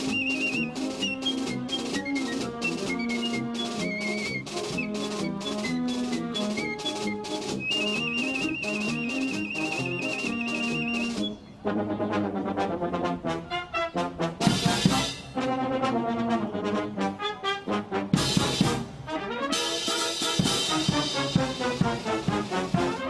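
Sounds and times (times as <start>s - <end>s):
military brass band playing: 0.0s - 23.0s.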